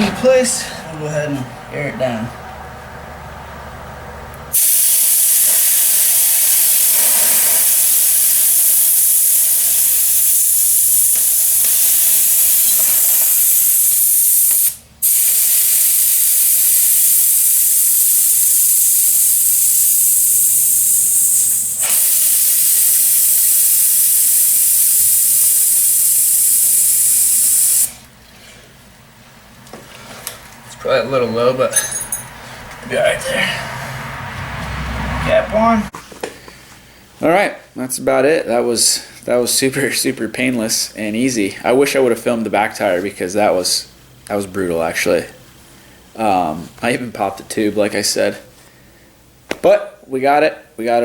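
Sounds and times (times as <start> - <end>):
compressed air hissing into tire: 4.5 - 28.0.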